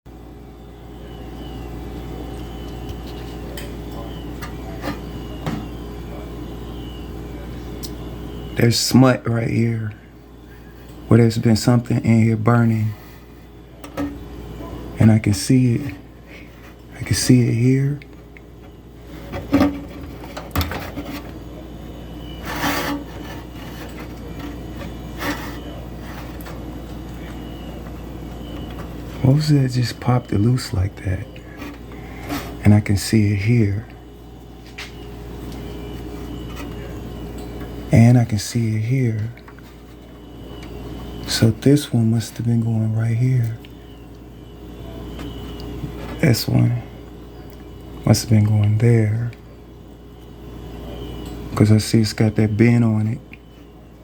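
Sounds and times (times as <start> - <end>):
steady low hum: 0.1 - 54.0
hands scraping rub: 22.3 - 26.6.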